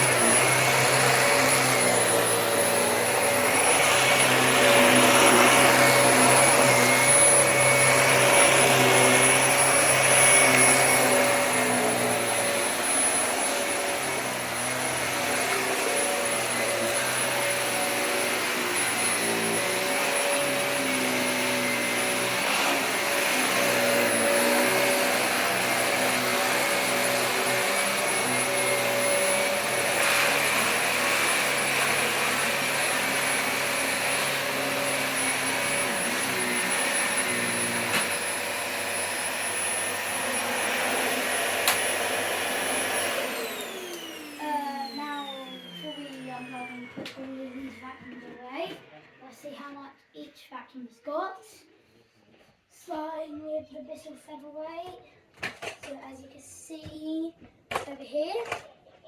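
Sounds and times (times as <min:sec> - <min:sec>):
vacuum cleaner running: 0:00.0 - 0:49.2.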